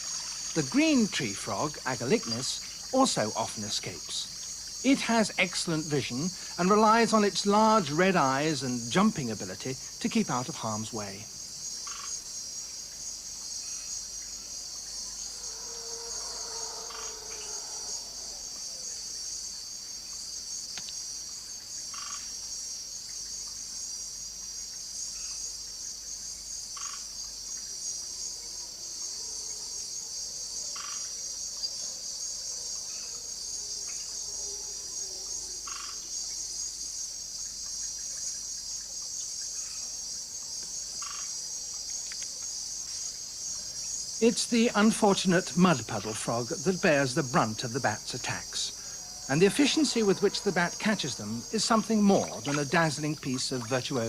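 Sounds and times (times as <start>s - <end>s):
frog calls: 0.0s - 22.3s, 26.8s - 27.3s, 37.4s - 54.0s
insects trilling: 0.0s - 54.0s.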